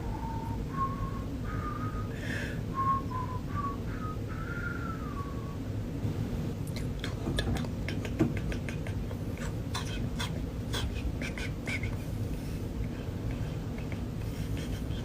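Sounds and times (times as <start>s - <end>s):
mouth clicks and squeaks: 6.7s - 12.0s, 12.8s - 15.0s.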